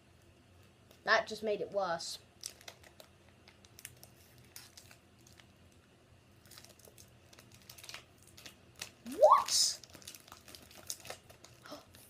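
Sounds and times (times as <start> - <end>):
foil wrapper crinkling: 2.4 - 5.8, 6.4 - 12.0.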